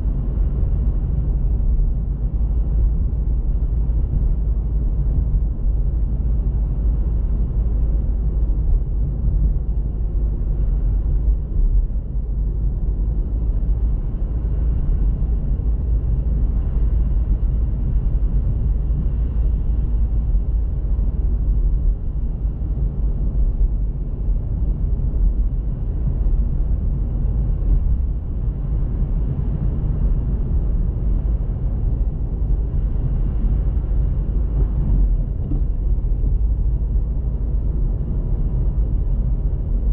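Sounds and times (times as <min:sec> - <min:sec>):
car engine rumble: 0:00.0 - 0:39.9
road noise: 0:00.0 - 0:39.9.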